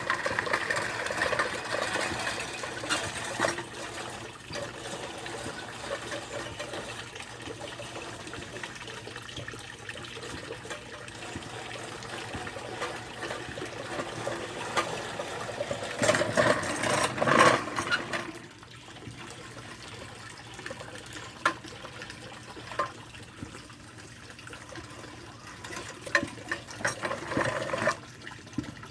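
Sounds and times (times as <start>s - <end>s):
electric lawn mower running: 0.0s - 6.9s.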